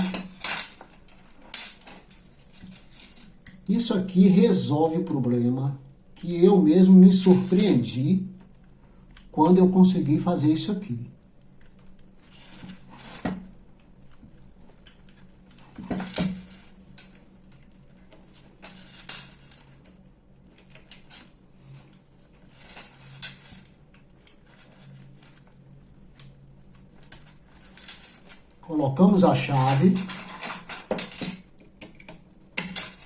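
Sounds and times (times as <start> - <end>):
small parts clicking and clinking: 0.0 - 3.6, 29.5 - 33.0.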